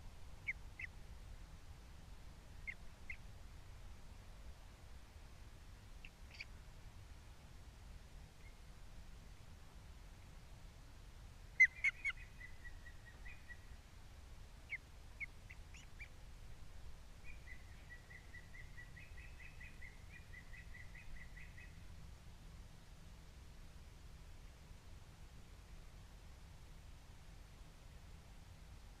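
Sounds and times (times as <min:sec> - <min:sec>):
osprey whistled chirps: 0:11.6 - 0:13.6, 0:17.2 - 0:21.8.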